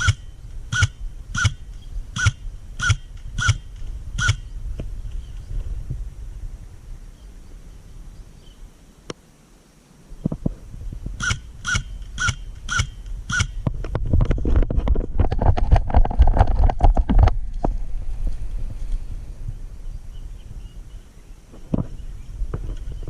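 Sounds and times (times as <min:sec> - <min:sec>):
crackling clicks and rustles: 0:10.2 - 0:19.1, 0:21.5 - 0:23.0.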